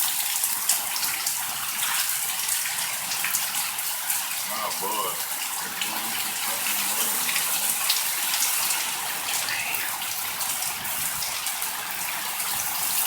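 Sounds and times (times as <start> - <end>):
heavy rain pouring: 0.0 - 13.0
faint voices murmuring: 5.6 - 10.0.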